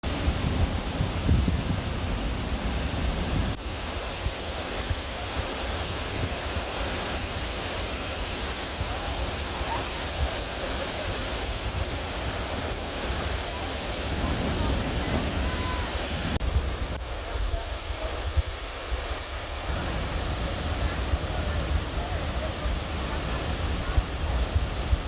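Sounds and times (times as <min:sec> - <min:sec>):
waterfall roaring: 0:00.0 - 0:25.0
wind buffeting microphone: 0:00.0 - 0:25.0.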